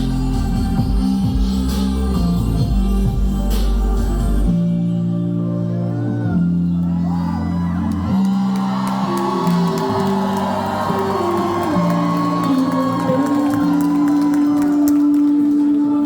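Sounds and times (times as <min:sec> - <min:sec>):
synth and bass notes: 0:00.0 - 0:16.0
crowd whooping and shouting: 0:05.6 - 0:16.0.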